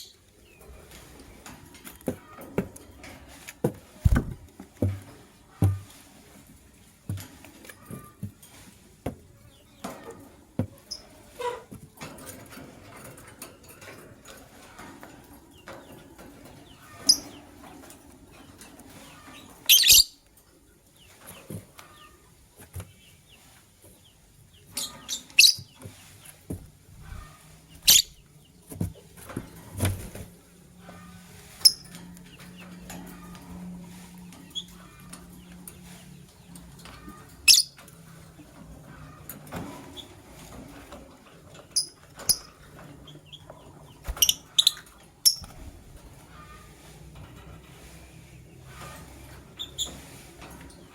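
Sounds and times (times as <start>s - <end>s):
lovebirds chirping: 19.0s - 28.9s, 30.9s - 39.2s, 41.7s - 46.6s.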